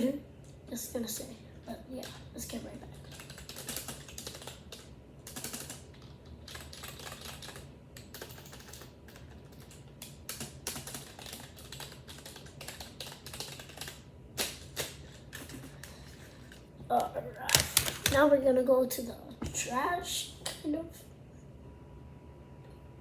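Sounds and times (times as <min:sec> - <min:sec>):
keyboard typing: 0:02.0 - 0:16.1, 0:16.9 - 0:18.3.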